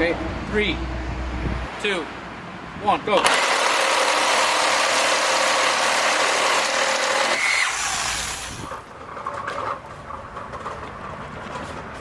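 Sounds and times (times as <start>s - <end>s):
reciprocating saw cutting wood: 3.2s - 9.0s.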